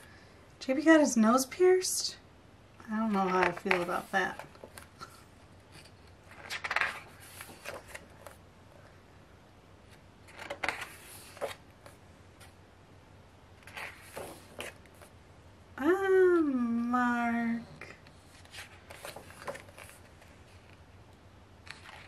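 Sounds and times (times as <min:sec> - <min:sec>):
pages turning and rustling: 0:03.1 - 0:08.4, 0:09.9 - 0:12.6, 0:13.6 - 0:15.2, 0:18.1 - 0:20.9, 0:21.6 - 0:22.0.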